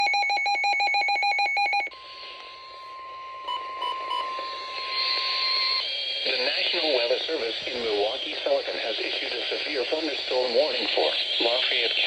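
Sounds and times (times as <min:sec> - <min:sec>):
steady warning alarm tone: 0:00.0 - 0:08.7
radio hiss: 0:04.6 - 0:12.0.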